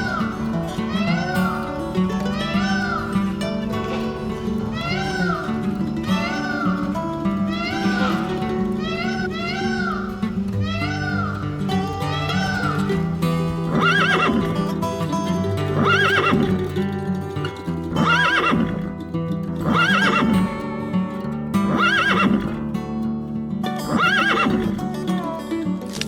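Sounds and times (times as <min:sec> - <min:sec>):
high whinnying animal call: 0:00.0 - 0:14.7, 0:15.7 - 0:16.7, 0:17.9 - 0:18.9, 0:19.6 - 0:20.5, 0:21.7 - 0:22.6, 0:23.8 - 0:24.8
background music: 0:00.0 - 0:22.9.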